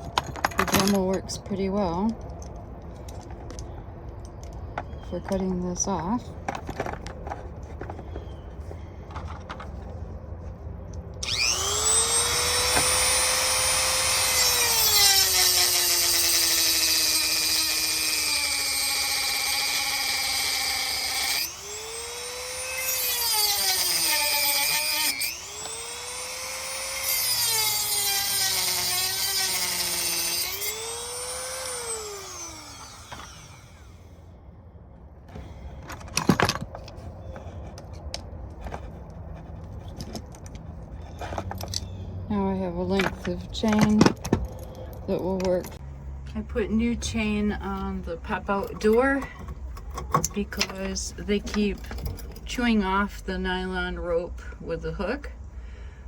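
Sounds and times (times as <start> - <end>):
rotary tool cutting metal chain: 11.2 - 33.9.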